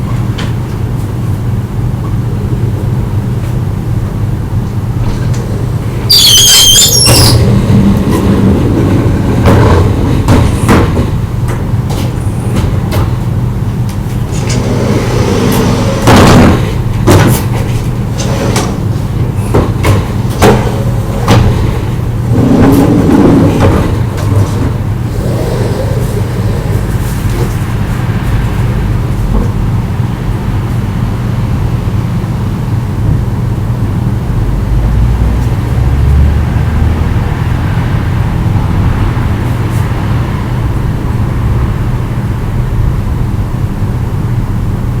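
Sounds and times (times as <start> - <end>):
shutter squealing: 6.1 - 7.7
steady low hum: 7.4 - 35.8.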